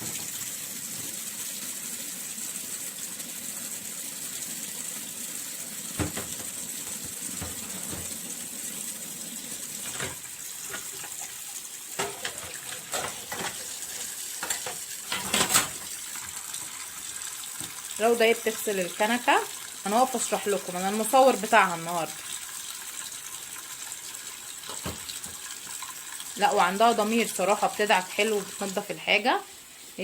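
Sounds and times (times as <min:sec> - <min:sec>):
tap running into sink: 0:05.9 - 0:08.4, 0:12.0 - 0:13.8, 0:17.5 - 0:17.8, 0:24.6 - 0:25.6
cups and dishes clinking: 0:12.0 - 0:13.7.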